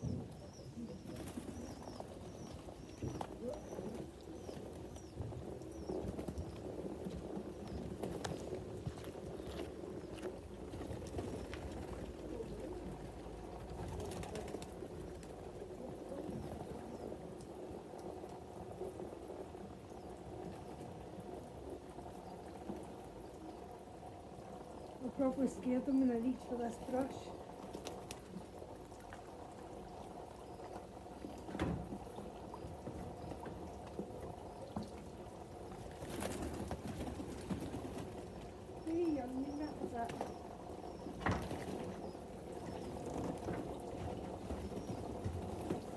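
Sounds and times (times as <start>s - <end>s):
water trickling into a bath: 16.7s - 45.9s
water drips: 22.0s - 36.1s.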